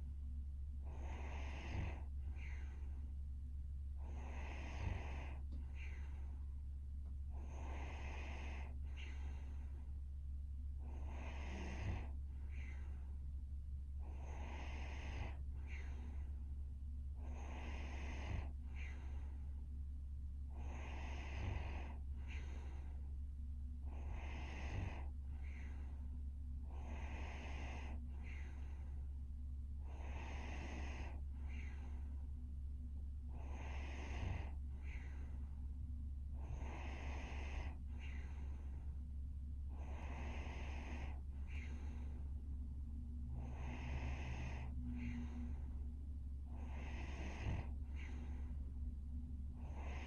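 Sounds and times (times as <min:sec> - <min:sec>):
low hum: 0:00.0 - 0:50.0
woman snoring lightly: 0:00.8 - 0:02.9, 0:04.0 - 0:06.3, 0:07.4 - 0:09.8, 0:10.8 - 0:12.9, 0:14.0 - 0:16.3, 0:17.2 - 0:19.4, 0:20.5 - 0:22.8, 0:23.9 - 0:26.0, 0:26.7 - 0:29.0, 0:29.8 - 0:32.1, 0:33.3 - 0:35.4, 0:36.4 - 0:38.7, 0:39.7 - 0:42.2, 0:43.4 - 0:45.7, 0:46.5 - 0:48.5, 0:49.6 - 0:50.0.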